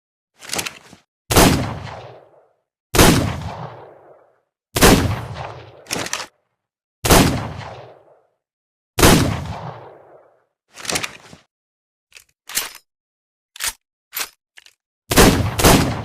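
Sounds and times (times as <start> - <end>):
revolver gunshots with echo: 1.3 - 6.1, 7.0 - 8.3, 9.0 - 10.4, 15.1 - 16.0.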